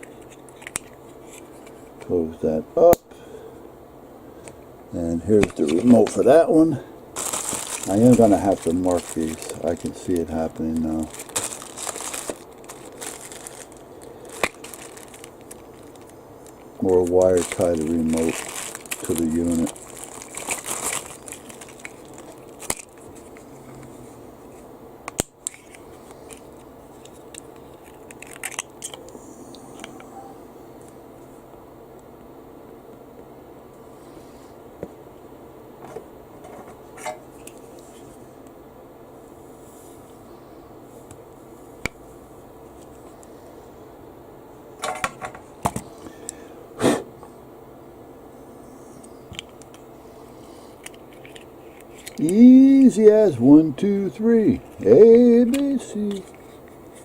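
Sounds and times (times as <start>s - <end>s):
faint steady hum: 0.0s - 57.0s
small parts clicking and snapping: 25.1s - 29.1s, 50.8s - 52.9s.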